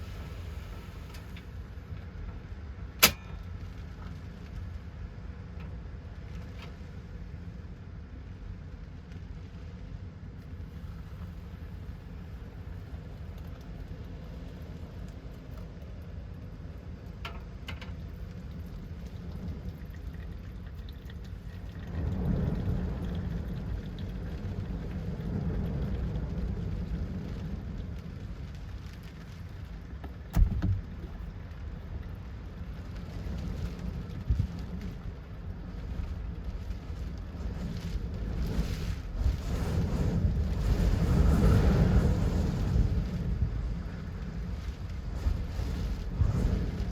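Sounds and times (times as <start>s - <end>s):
sharp thump: 3.0s - 3.4s, 30.3s - 31.1s
wind gusts buffeting truck: 29.6s - 46.9s
small knock: 30.3s - 31.2s.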